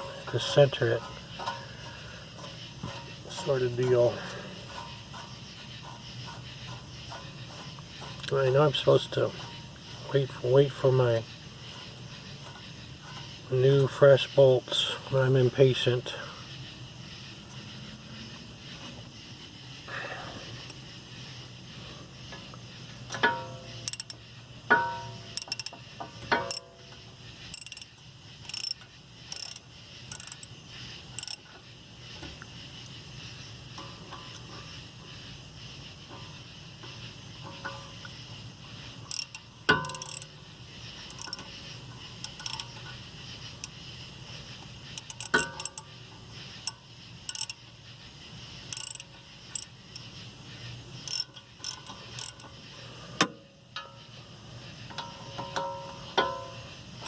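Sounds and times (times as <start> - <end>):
metal tools knocking: 0.0 - 10.9, 23.1 - 27.0, 38.9 - 40.4, 44.9 - 45.9, 54.8 - 56.7
socket ratchet clicking: 23.1 - 31.6, 38.8 - 44.0, 44.6 - 47.6, 48.6 - 50.2, 51.0 - 52.6.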